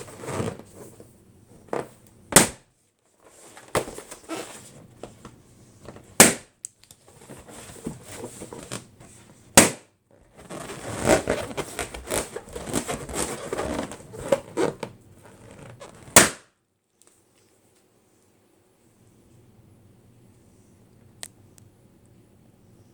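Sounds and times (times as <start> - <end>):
balloon popping: 2.3 - 2.6, 6.2 - 6.5, 9.6 - 9.9, 15.6 - 16.5
balloons rubbing and squeaking: 10.2 - 16.2.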